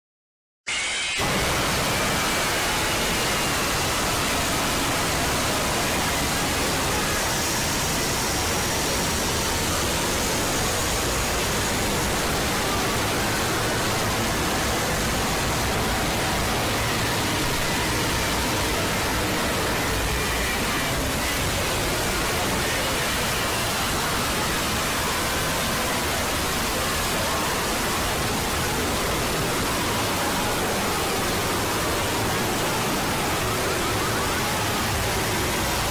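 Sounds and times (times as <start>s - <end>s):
loud static hiss: 0.7s - 35.9s.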